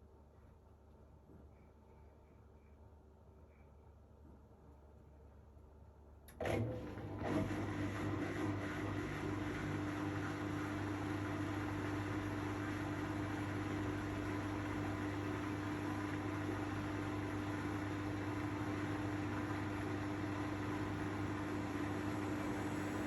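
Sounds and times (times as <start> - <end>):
washing machine spinning: 6.3 - 23.0.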